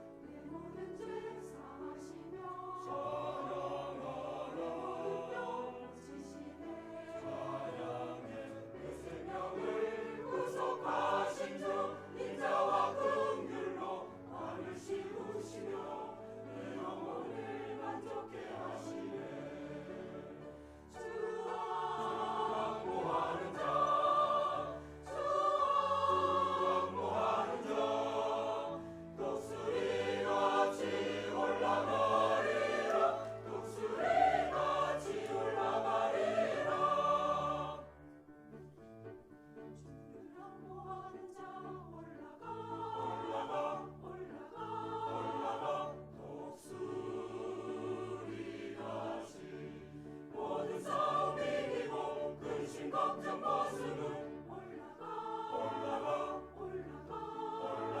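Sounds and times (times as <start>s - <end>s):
choir singing: 0.0s - 38.3s, 39.8s - 58.0s.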